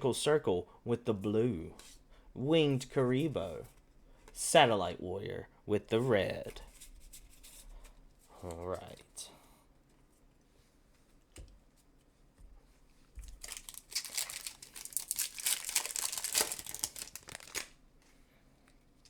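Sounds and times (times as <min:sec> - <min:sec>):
foil wrapper crinkling and tearing: 0:13.2 - 0:17.8.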